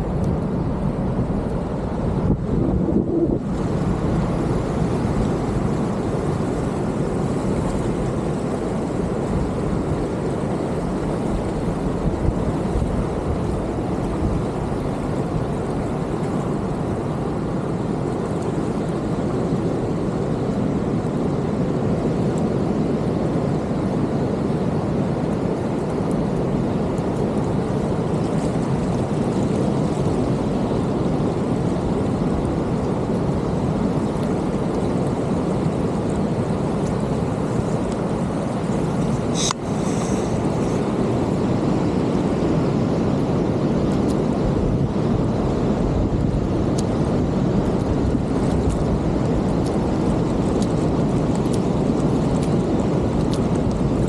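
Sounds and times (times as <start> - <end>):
creek water rushing: 33.2 - 42.6.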